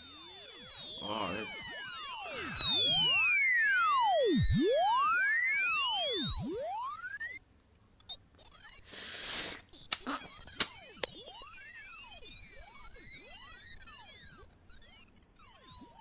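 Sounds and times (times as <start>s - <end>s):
pure tone sliding lower: 0.0s - 16.0s
clicks: 9.0s - 11.0s.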